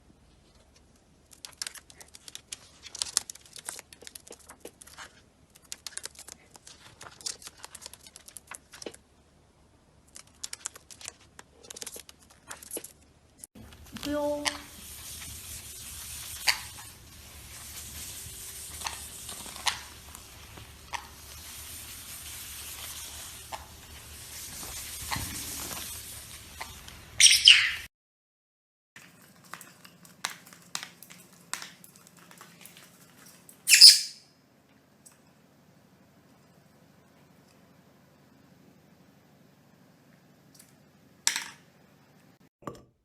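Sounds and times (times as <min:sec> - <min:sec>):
parrots clicking and chirping: 0:01.3 - 0:09.0, 0:10.1 - 0:12.9, 0:14.4 - 0:27.9, 0:29.0 - 0:34.2
parrot shrill screeches: 0:27.2 - 0:27.9, 0:33.7 - 0:34.3.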